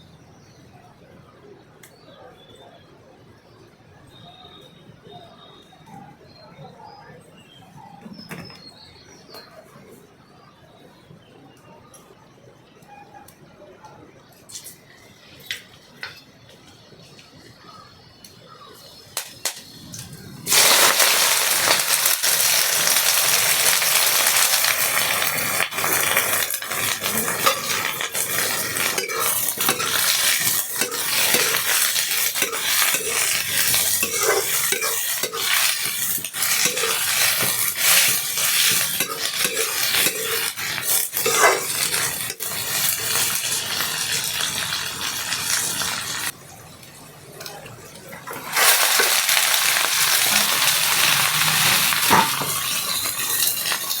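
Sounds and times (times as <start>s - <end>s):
food sizzling in hot oil: 18.7s - 46.4s, 48.3s - 54.0s
spatula scraping a pan: 20.5s - 46.3s, 48.3s - 54.0s.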